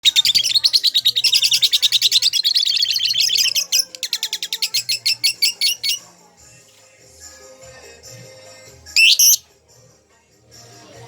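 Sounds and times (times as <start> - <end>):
lovebird chattering song: 0.0 - 6.0, 9.0 - 9.4.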